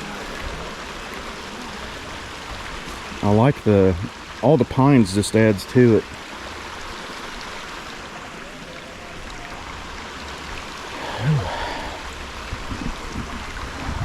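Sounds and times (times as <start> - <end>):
waterfall rushing: 10.0 - 12.6.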